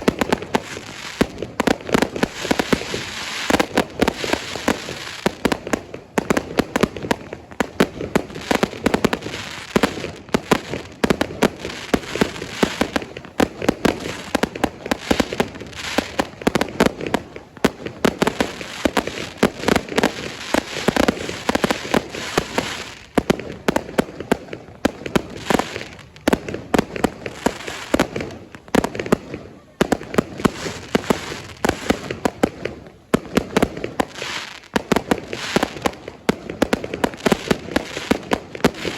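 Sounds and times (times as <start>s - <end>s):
fireworks bangs and crackling: 0.0s - 38.9s.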